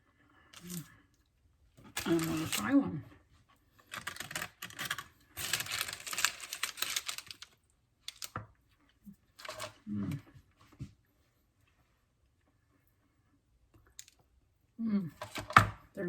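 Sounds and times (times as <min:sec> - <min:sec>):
crackling rustling handling noise: 0:00.6 - 0:00.9, 0:01.8 - 0:11.0.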